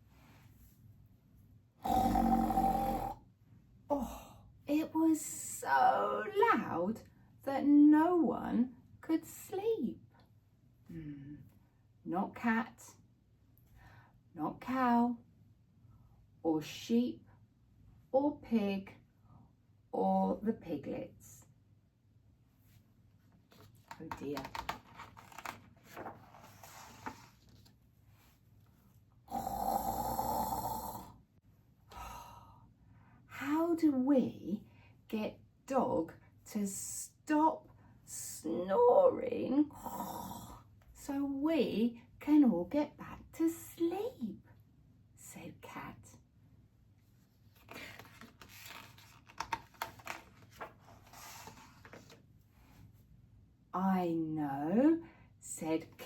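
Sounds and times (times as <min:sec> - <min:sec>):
person imitating snoring: 0:01.8 - 0:03.2, 0:29.3 - 0:31.2, 0:39.7 - 0:40.6.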